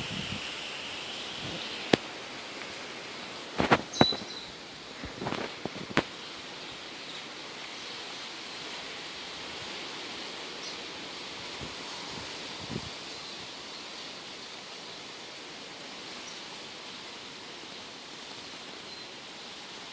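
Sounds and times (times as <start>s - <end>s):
outdoor rushing hiss: 0.0s - 19.9s
high chirp: 3.9s - 4.5s.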